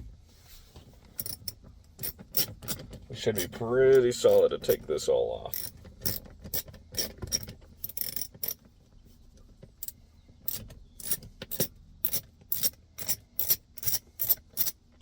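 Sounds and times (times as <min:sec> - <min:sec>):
socket ratchet clicking: 0:01.2 - 0:04.4, 0:05.5 - 0:08.6, 0:09.8 - 0:14.8.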